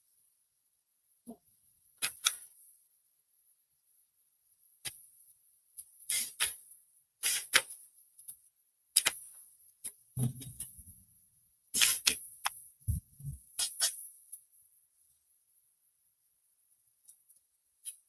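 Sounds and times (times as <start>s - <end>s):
soft low thuds: 10.2s - 11.0s, 12.8s - 13.4s.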